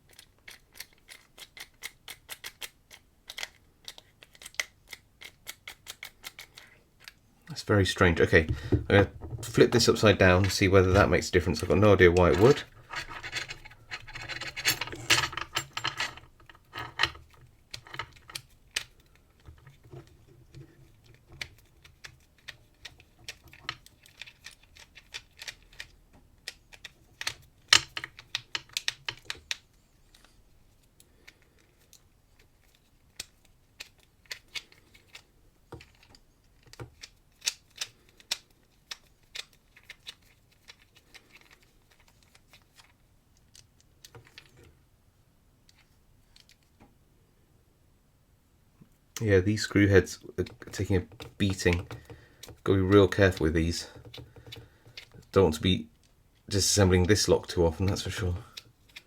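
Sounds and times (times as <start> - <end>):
small metal parts clicking: 0.1 - 7.2, 11.6 - 19.7, 21.1 - 29.6, 35.8 - 44.5.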